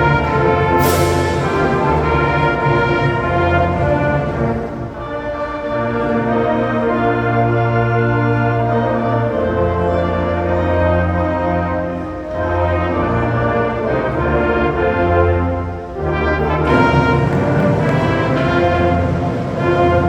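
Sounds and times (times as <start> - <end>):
brass band playing held chords: 0.0 - 20.0.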